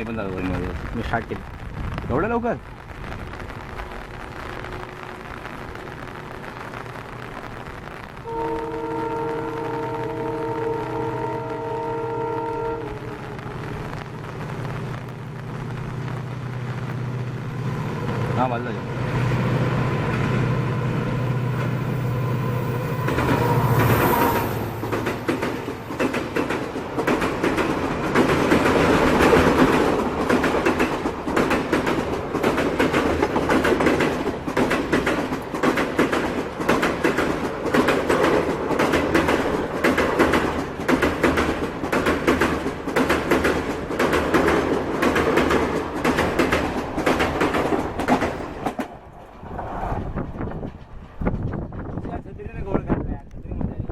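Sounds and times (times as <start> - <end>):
diesel locomotive engine drone: 2.7 - 52.0
train wheels clattering on rail joints: 22.6 - 53.0.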